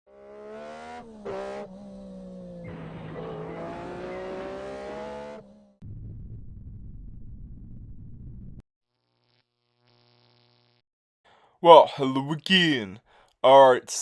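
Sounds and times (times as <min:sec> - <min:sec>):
car engine revving: 0:00.1 - 0:05.8
low hum: 0:05.8 - 0:08.6.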